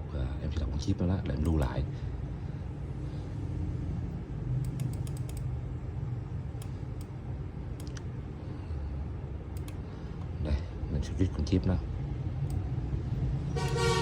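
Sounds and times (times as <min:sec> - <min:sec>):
steady low hum: 0:00.0 - 0:14.0
keyboard typing: 0:04.7 - 0:05.5, 0:09.6 - 0:09.8.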